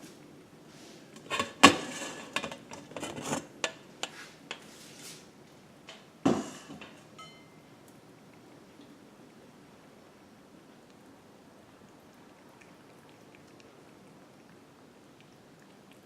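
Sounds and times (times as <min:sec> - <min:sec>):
hard objects clattering and knocking: 0:01.2 - 0:03.8.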